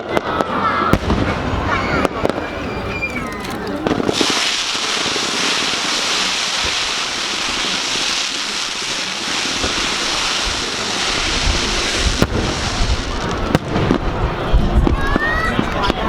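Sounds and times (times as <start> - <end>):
fireworks hissing crackle: 0.0 - 16.0
sharp firework bang: 0.1 - 3.2, 9.5 - 16.0.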